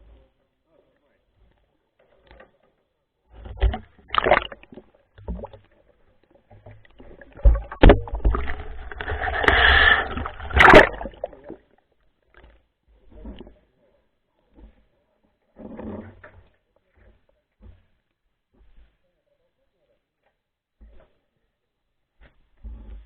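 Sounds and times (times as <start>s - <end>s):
water splashing and sloshing: 3.3s - 13.6s.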